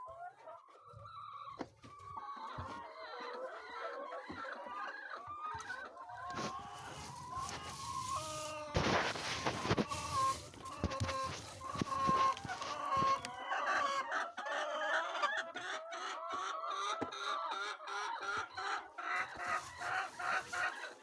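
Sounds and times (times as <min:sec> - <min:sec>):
chickens clucking: 0:00.0 - 0:21.0.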